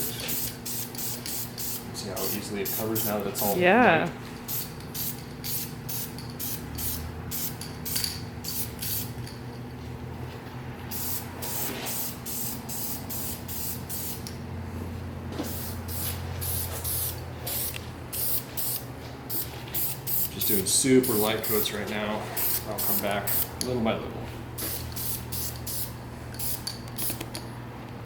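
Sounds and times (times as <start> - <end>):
paint spray hissing bursts: 0.2 - 3.2, 4.5 - 9.1, 10.9 - 14.3, 15.4 - 21.8, 22.4 - 23.5, 24.6 - 27.2.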